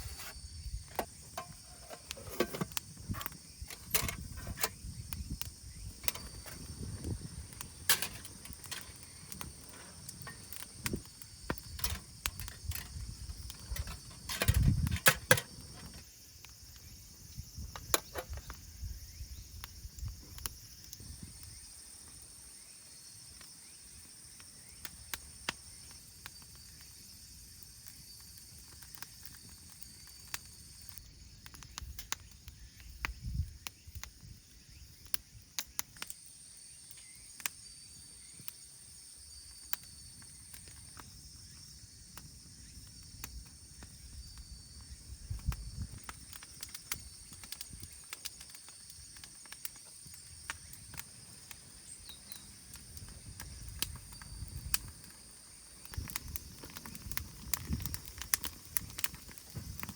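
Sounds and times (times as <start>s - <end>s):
insects trilling: 0.0s - 59.9s
sharp clicks and knocks: 7.6s - 16.0s.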